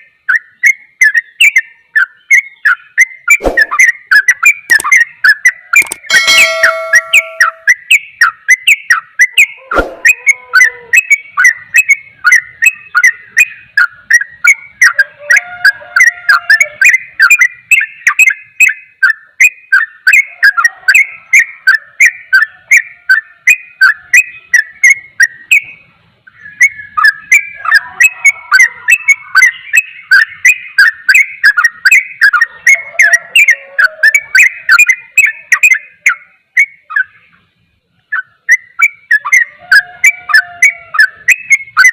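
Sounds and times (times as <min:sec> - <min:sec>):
bulbul singing whistled notes: 0:00.0 - 0:37.4, 0:38.0 - 0:41.9
sharp click: 0:04.7 - 0:05.0, 0:05.8 - 0:06.1.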